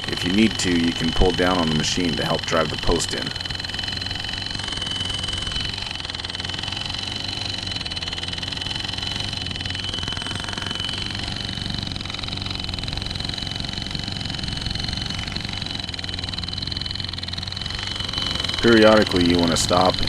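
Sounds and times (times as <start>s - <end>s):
steady high ringing: 0.0s - 4.4s, 18.2s - 20.0s.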